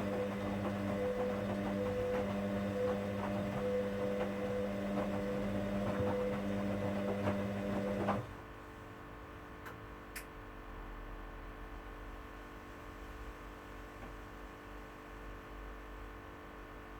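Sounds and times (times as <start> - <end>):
washing machine motor humming: 0.0 - 8.5.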